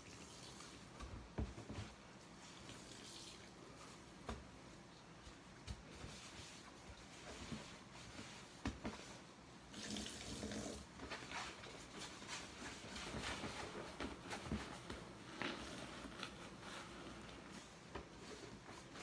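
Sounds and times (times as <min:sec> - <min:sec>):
water running and splashing: 0:02.5 - 0:03.6, 0:09.7 - 0:10.9.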